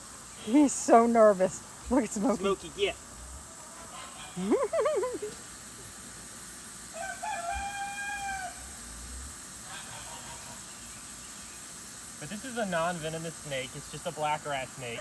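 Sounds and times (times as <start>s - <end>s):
rooster crowing: 6.9s - 8.8s.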